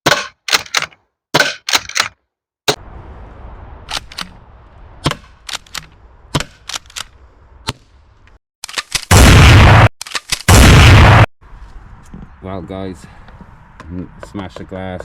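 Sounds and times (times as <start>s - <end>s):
shotgun cracks and clacks: 8.6s - 9.1s, 10.0s - 10.6s.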